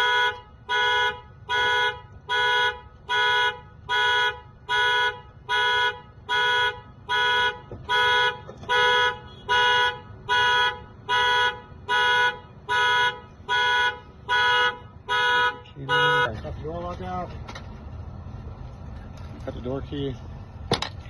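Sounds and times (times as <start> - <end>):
car horn alarm blasts: 0.0 - 16.4.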